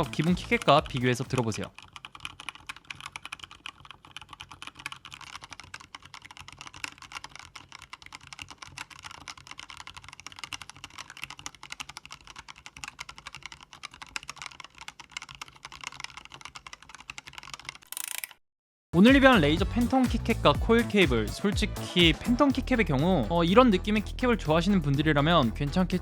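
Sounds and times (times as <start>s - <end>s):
mechanical keyboard typing: 0.0s - 18.4s.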